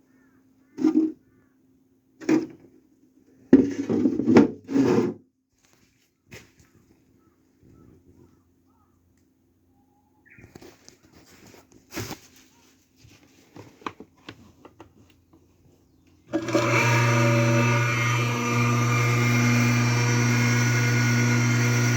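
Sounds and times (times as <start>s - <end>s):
well pump motor humming: 16.3s - 21.9s.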